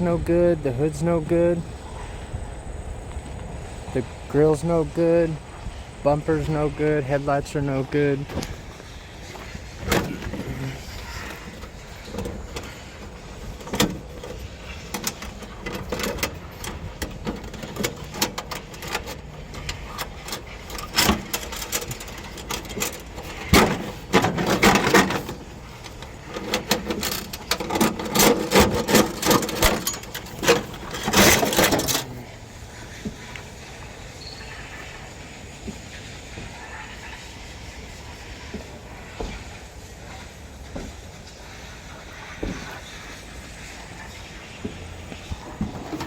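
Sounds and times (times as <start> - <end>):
handling noise: 0.0 - 37.7, 38.4 - 46.0
footsteps outdoors: 0.0 - 46.0
crunching and rustling: 7.7 - 37.7, 38.4 - 46.0.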